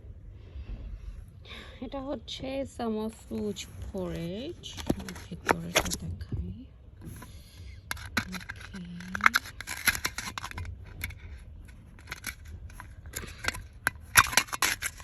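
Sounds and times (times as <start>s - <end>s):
packaging being opened by hand: 7.9s - 11.4s, 12.0s - 15.0s.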